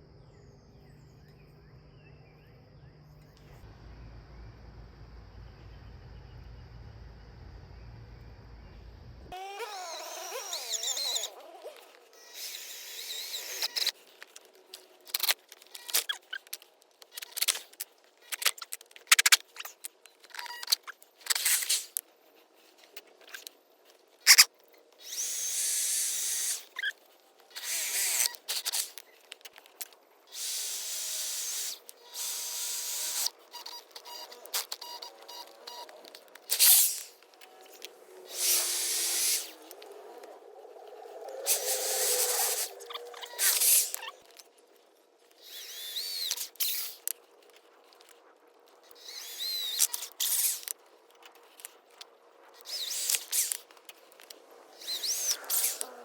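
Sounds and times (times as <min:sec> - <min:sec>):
power tool bursts: 0:30.3 - 0:33.3, 0:38.3 - 0:39.6
hissing noise: 0:36.6 - 0:44.2.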